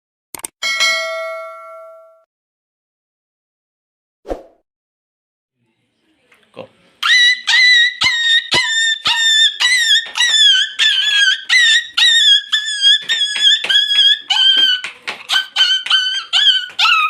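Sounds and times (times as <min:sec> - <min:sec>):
boy imitating puppy yelping: 0:07.0 - 0:17.0.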